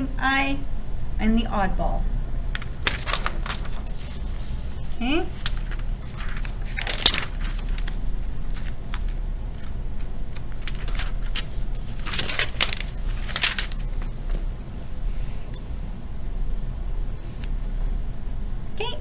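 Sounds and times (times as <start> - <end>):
low electrical hum: 0.0 - 19.0
paper rustling: 2.5 - 14.5.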